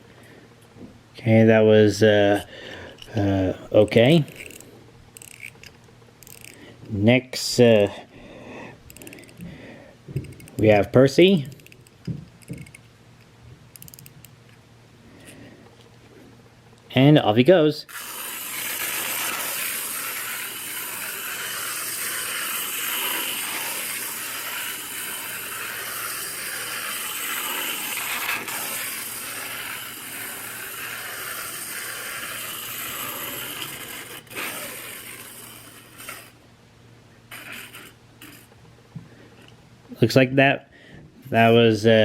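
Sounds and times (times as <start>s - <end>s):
clockwork toy motor whirring: 3.0s - 6.7s, 8.9s - 9.5s, 10.2s - 10.6s, 11.4s - 12.9s, 13.8s - 14.2s, 17.8s - 36.4s, 37.3s - 38.5s
toy click: 5.2s - 6.6s, 8.9s - 9.5s, 11.5s - 12.9s, 13.8s - 14.3s.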